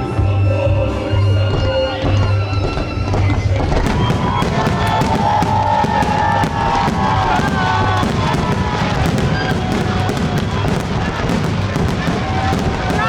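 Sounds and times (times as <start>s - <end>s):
music playing: 0.0s - 13.0s
fireworks crackling bursts: 1.6s - 13.0s.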